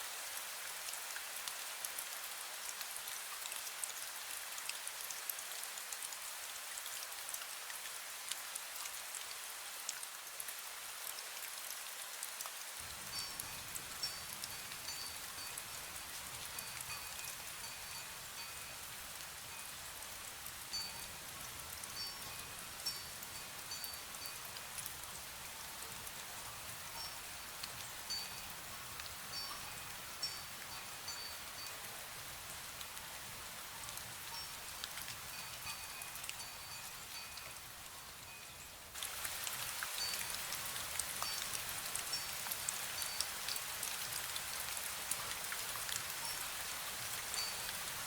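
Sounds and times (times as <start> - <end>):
fine rain falling: 0.0 - 48.0
wind chime ringing: 13.0 - 15.6, 16.6 - 18.7, 20.7 - 21.2, 35.3 - 37.4.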